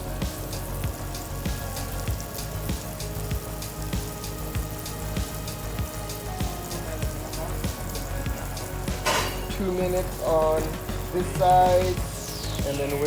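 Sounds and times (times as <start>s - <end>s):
fish sizzling in hot oil: 0.0s - 13.0s
oil crackling and spitting: 0.0s - 13.0s.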